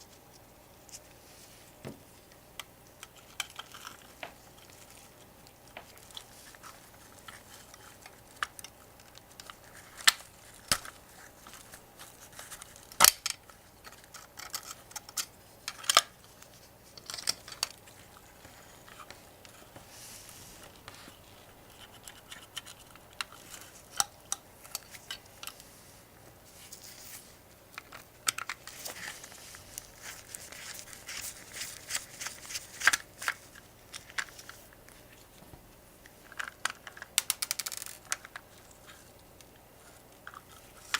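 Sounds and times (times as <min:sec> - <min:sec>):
light scratching and rustling: 0:03.0 - 0:12.9, 0:16.2 - 0:36.4.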